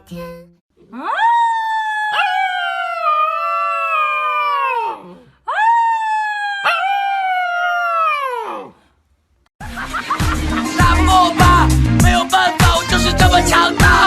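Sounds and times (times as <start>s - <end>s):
dog howling: 0.8s - 8.8s.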